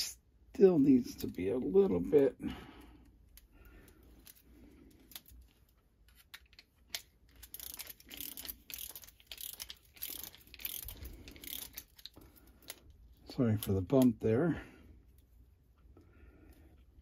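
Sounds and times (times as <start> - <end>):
small metallic clicks and ticks: 3.3 - 14.2.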